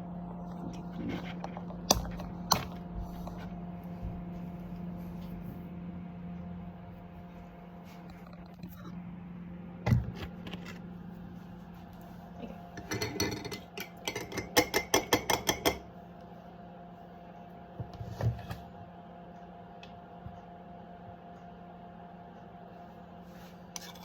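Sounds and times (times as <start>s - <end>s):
steady low hum: 0.0s - 24.0s
utensils clinking against dishes: 12.8s - 15.8s, 23.7s - 24.0s.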